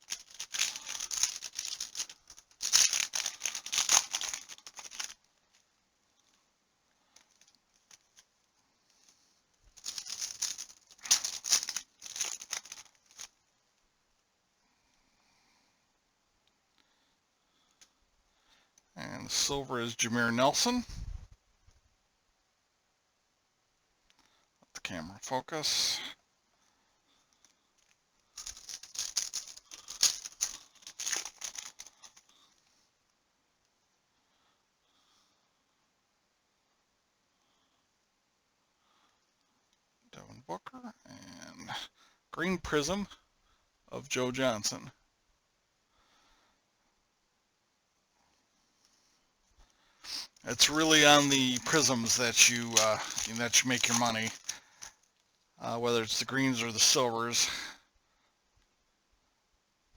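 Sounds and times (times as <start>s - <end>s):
cards rustling and clicking: 0.0s - 5.3s, 9.7s - 13.3s, 28.4s - 32.3s, 50.1s - 55.0s
cellophane wrapper crinkling and tearing: 0.0s - 5.3s, 9.7s - 13.3s, 28.4s - 32.3s, 50.1s - 55.0s.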